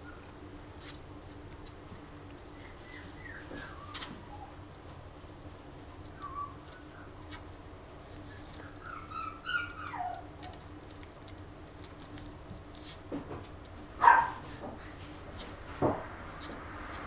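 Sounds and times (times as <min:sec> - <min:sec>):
puppies whimpering: 0:02.5 - 0:04.7, 0:06.1 - 0:07.1, 0:08.6 - 0:10.5.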